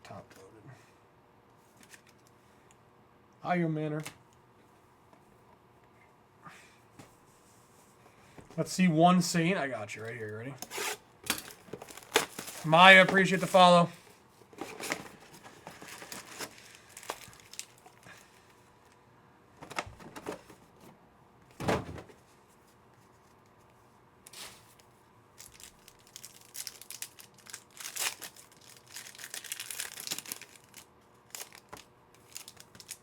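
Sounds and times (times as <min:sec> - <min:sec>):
card wrappers crinkling and tearing: 0:10.7 - 0:13.9, 0:14.6 - 0:18.5, 0:24.3 - 0:33.0.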